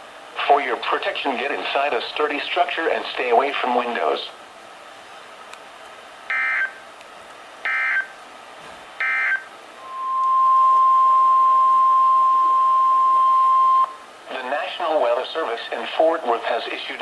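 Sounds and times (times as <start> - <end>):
steady warning alarm tone: 6.3 - 6.8, 7.6 - 8.2, 9.0 - 14.0.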